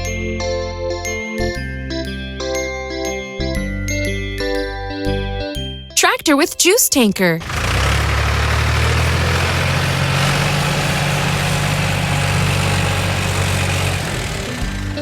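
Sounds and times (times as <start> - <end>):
tractor engine idling: 7.4 - 15.0.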